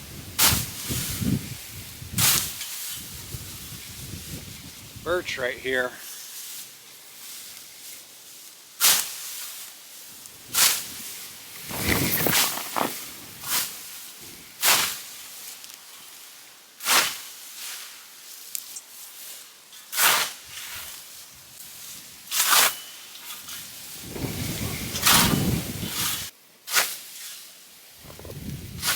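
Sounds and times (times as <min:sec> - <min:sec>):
scythe swishing through grass: 0:00.4 - 0:03.1, 0:06.1 - 0:27.6.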